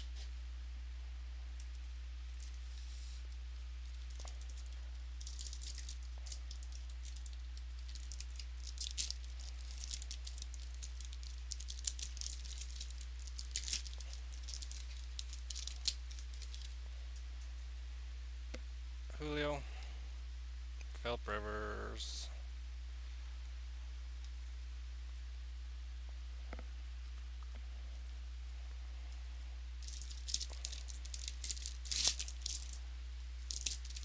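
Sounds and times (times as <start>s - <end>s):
low electrical hum: 0.0s - 34.0s
cards and foil wrappers handled: 1.6s - 17.6s, 29.8s - 32.8s, 33.4s - 34.0s.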